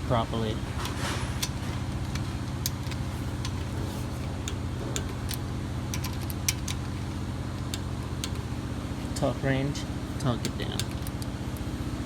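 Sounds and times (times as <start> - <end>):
steady low hum: 0.0 - 12.0
wrench clicking on metal bolts: 4.4 - 7.0.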